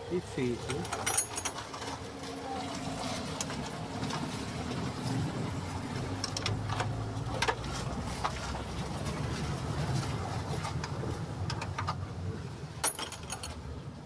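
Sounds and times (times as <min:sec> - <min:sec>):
low engine hum: 0:01.6 - 0:12.8.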